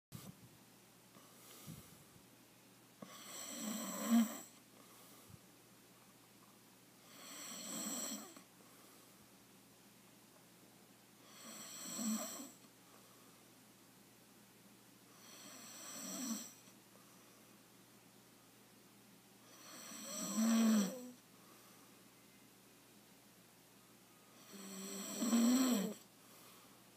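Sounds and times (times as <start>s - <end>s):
man snoring: 3.0s - 4.6s, 7.1s - 8.4s, 11.2s - 12.6s, 15.2s - 16.6s, 19.5s - 21.2s, 24.4s - 26.0s.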